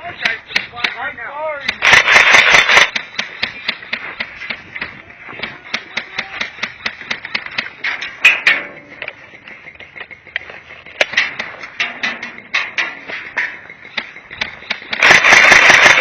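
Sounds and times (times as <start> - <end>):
airsoft guns firing snaps: 1.6 - 3.8, 14.8 - 16.0.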